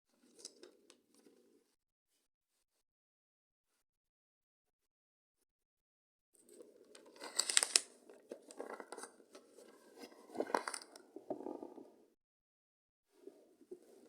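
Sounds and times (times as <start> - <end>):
craft material crinkling and tearing: 7.0 - 9.1.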